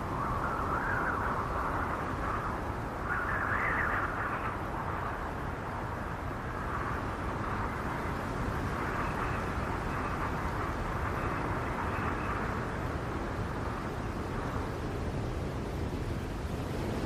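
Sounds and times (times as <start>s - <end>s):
wind howling: 0.0s - 17.0s.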